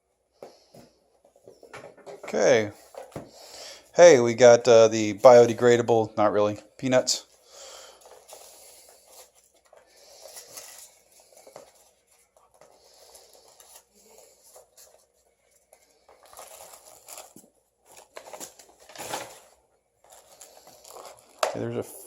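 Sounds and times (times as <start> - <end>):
packing peanuts rustling and crinkling: 7.6 - 22.0.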